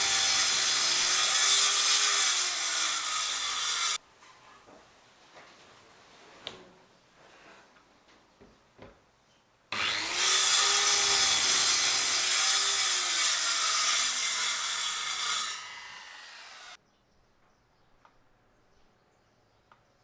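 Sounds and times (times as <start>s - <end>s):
circular saw cutting wood: 0.0s - 4.0s, 9.8s - 16.8s.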